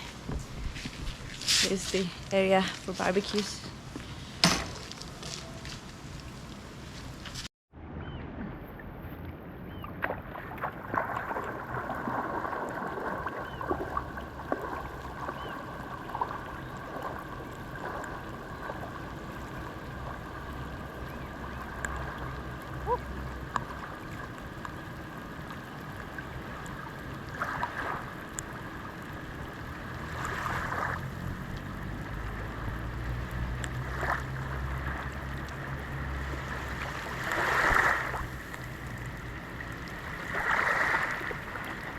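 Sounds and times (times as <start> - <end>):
water running and lapping: 9.7 - 41.9
water dripping: 10.6 - 27.4, 28.2 - 37.1.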